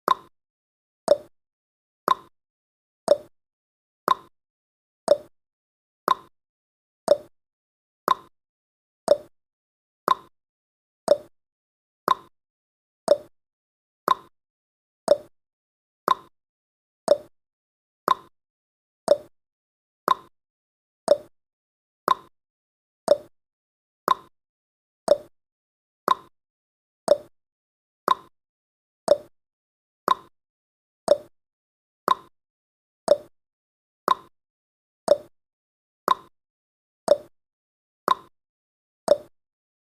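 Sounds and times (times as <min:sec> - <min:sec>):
clock ticking: 0:29.1 - 0:29.3, 0:39.1 - 0:39.3.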